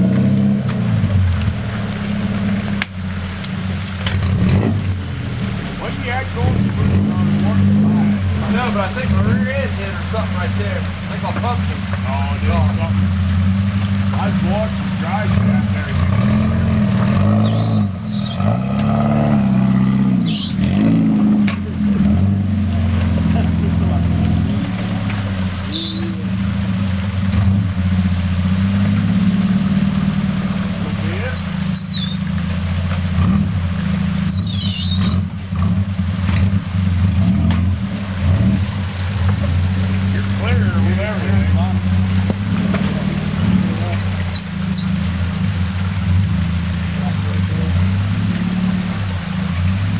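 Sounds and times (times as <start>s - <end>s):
engine revving: 0.0s - 49.9s
high squeaks: 16.0s - 20.8s, 25.6s - 26.8s, 31.2s - 32.6s, 34.2s - 35.3s, 44.2s - 45.2s
brief high squeal: 17.4s - 18.4s, 20.2s - 20.6s, 25.7s - 26.4s, 31.3s - 32.3s, 34.3s - 35.2s.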